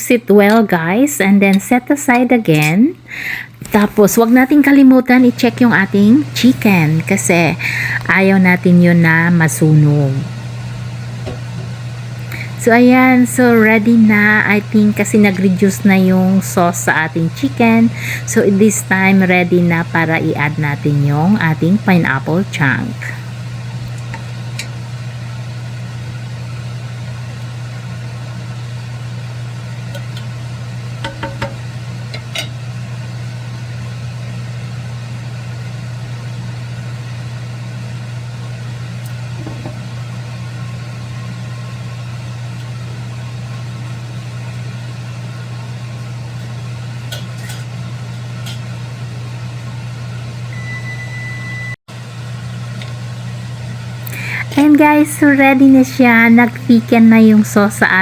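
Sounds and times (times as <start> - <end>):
low machine hum: 0.0 - 58.0
cookware knocks and clicks: 31.0 - 31.6.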